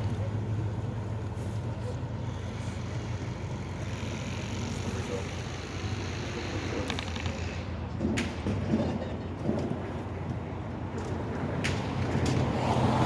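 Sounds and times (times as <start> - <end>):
motor vehicle engine running: 0.0 - 7.9.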